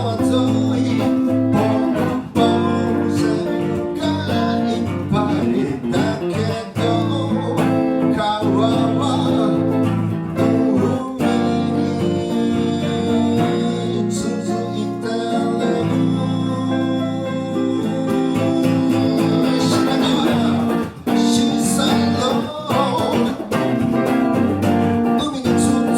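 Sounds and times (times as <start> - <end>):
guitar plucked and strummed: 0.0 - 25.9
live band playing: 16.8 - 25.9.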